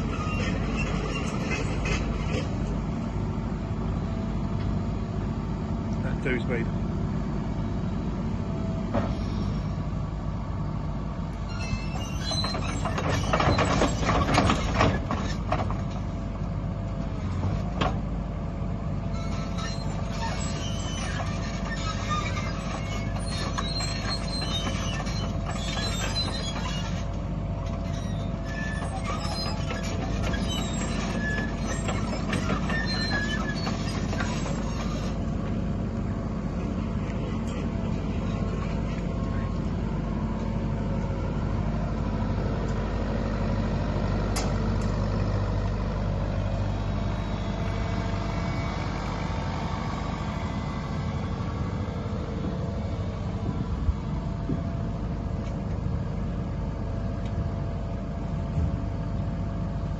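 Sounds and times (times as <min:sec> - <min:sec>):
metal squealing and knocking: 0:00.0 - 0:02.6, 0:11.4 - 0:16.0, 0:19.1 - 0:35.3
clanking and squeaking: 0:00.0 - 0:02.7, 0:11.4 - 0:16.0, 0:19.1 - 0:35.6, 0:37.0 - 0:39.6
excavator diesel engine running: 0:00.0 - 0:59.9.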